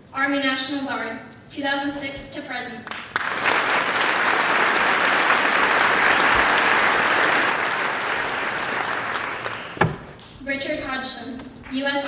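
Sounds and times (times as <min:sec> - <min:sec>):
audience applauding: 0:02.9 - 0:10.0.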